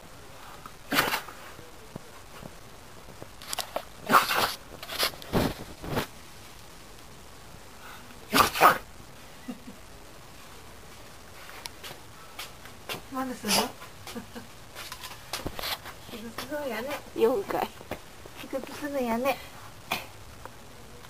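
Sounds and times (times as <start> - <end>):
dog sneezing: 0.9 - 1.4, 4.0 - 5.1, 8.3 - 8.8, 13.5 - 13.8.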